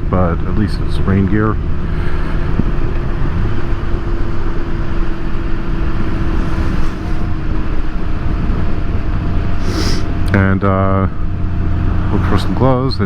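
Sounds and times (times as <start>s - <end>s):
motorcycle engine drone: 0.0s - 13.0s
road noise: 0.0s - 13.0s
wind noise: 2.3s - 10.3s.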